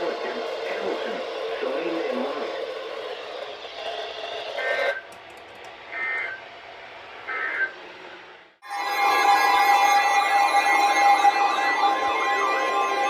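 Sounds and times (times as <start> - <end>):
radio hiss: 0.0 - 3.2, 5.9 - 6.5, 7.1 - 7.9.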